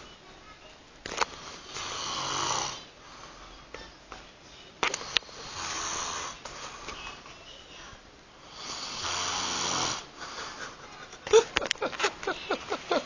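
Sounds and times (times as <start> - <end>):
man snoring: 1.4 - 2.9, 5.0 - 6.4, 8.4 - 10.1.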